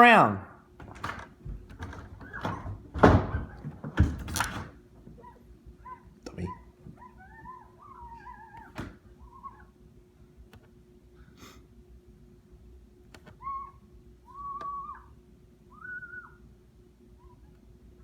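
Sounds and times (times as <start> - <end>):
dog whining: 5.1 - 9.8, 13.3 - 16.5, 17.1 - 17.7.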